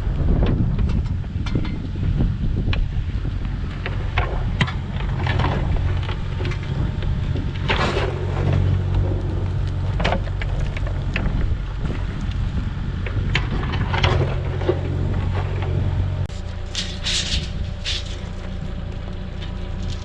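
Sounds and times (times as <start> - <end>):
engine running: 0.0 - 20.0
wind buffeting microphone: 0.0 - 20.0
short scraping rush: 16.3 - 18.8.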